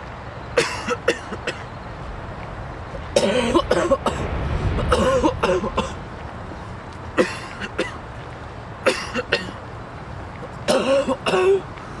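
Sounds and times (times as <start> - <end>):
steady low rumble: 0.0 - 12.0
person coughing: 0.6 - 1.6, 3.2 - 4.2, 4.9 - 6.0, 7.2 - 8.0, 8.9 - 9.6, 10.7 - 11.6.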